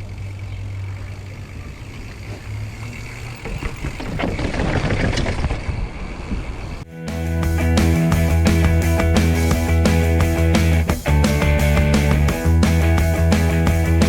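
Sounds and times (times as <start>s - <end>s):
tyres clattering over rough ground: 0.0s - 6.8s
bike rattling: 0.0s - 6.9s
tyres rumbling on trail: 0.0s - 14.0s.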